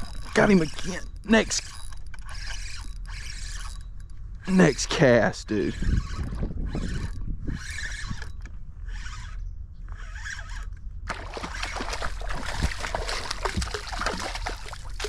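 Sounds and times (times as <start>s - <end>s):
spinning reel cranking: 0.0s - 10.7s.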